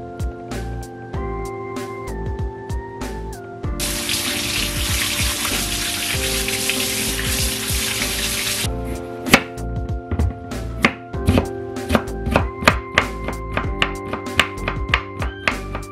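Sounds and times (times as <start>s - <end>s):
tap running water into sink: 3.8s - 8.7s.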